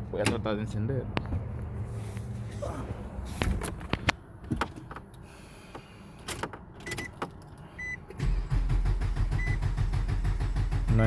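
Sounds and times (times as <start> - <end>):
car key clicks and rattles: 3.4 - 8.2
starter cranking engine: 8.2 - 11.0.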